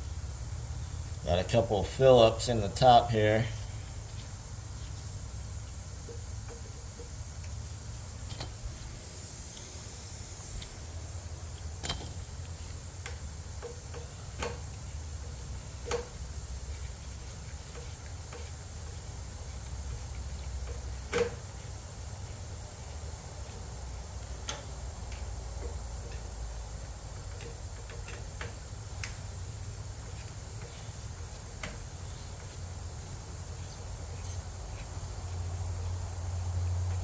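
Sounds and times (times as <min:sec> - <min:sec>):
steady low hum: 0:00.0 - 0:37.0.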